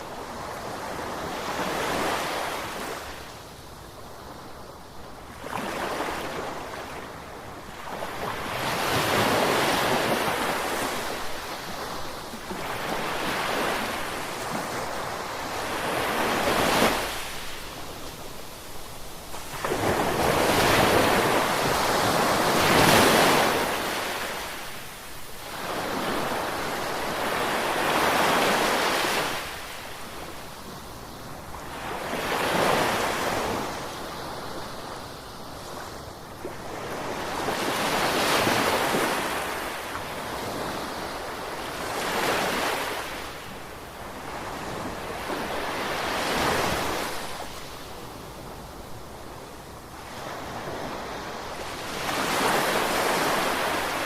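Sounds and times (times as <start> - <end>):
ocean waves breaking on shore: 4.2 - 54.0.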